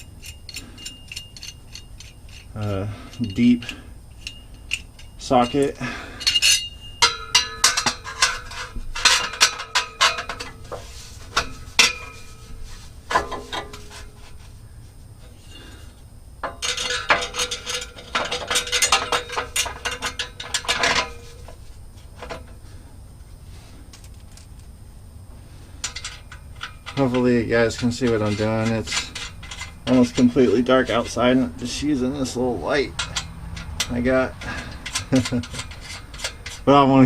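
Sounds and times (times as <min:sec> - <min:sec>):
metal tools clicking and clinking: 0:00.0 - 0:12.5, 0:16.4 - 0:21.6, 0:25.8 - 0:36.7.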